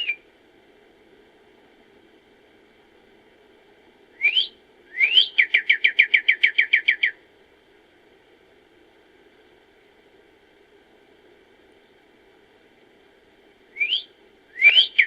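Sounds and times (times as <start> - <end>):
songbird singing: 0.0 - 0.3, 4.2 - 7.2, 13.7 - 15.0
faint background hiss: 0.0 - 15.0.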